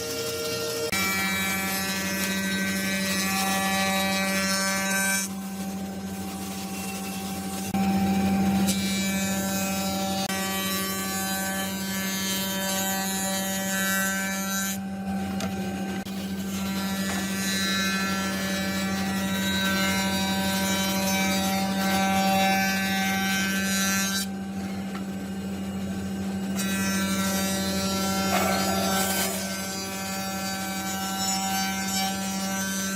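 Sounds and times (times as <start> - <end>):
tool cutting wood: 8.5 - 32.9
power tool motor hum: 24.4 - 30.9.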